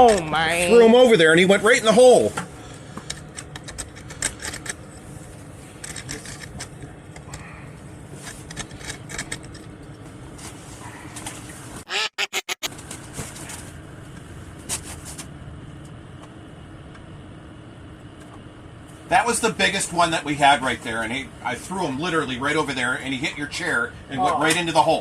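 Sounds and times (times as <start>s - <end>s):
steady low hum: 0.0s - 25.0s
scattered clicks and knocks: 2.4s - 4.8s, 5.8s - 7.4s, 8.2s - 10.0s.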